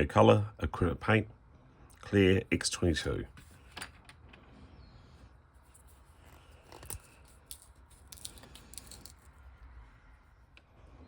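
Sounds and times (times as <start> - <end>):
small objects clicking and rustling: 5.6 - 9.4.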